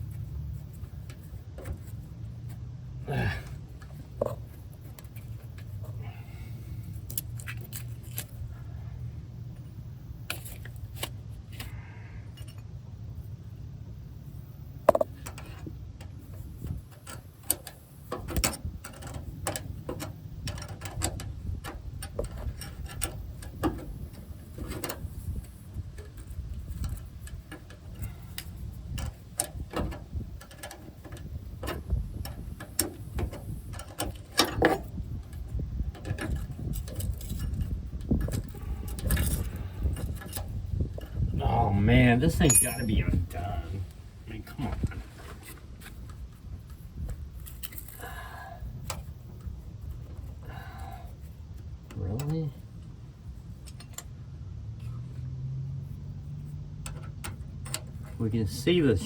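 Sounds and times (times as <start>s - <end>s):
steady low hum: 0.0s - 59.0s
metal tools clinking and tapping: 42.4s - 43.4s.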